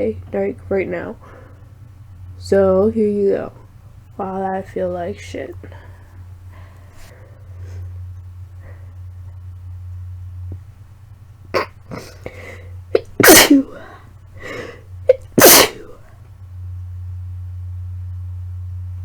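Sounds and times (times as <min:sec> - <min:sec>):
gasping in-breaths: 0:11.9 - 0:12.8, 0:13.7 - 0:14.9
woman sneezing: 0:13.0 - 0:16.0.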